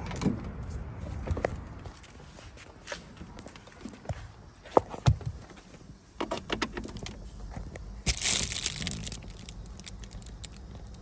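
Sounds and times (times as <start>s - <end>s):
loud rustle: 8.1s - 10.6s.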